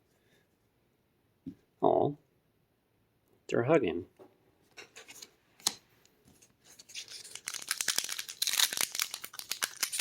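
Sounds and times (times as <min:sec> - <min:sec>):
foil wrapper tearing: 0:06.8 - 0:10.0.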